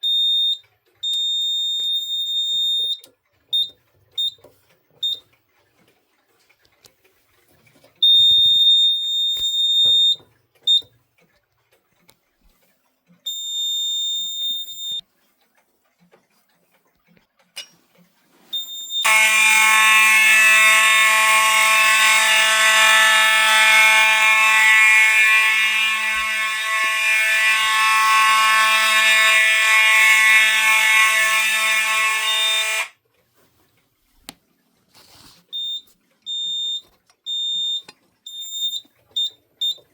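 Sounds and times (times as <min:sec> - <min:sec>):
high-pitched steady alarm tone: 0:08.0 - 0:10.2, 0:18.6 - 0:33.0
loud buzzing alarm horn: 0:19.0 - 0:33.0.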